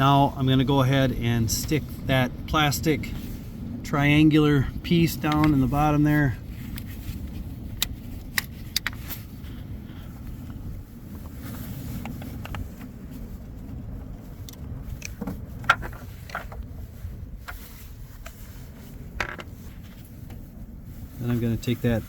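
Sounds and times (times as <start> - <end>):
low background rumble: 0.0 - 22.0.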